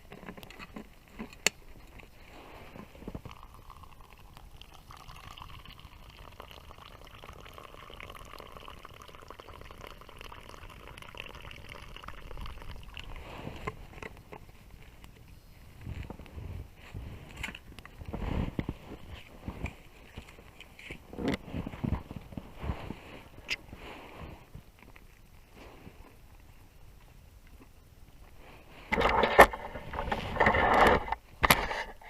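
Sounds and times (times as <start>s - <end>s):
water hissing and bubbling in pot: 0.9s - 26.2s.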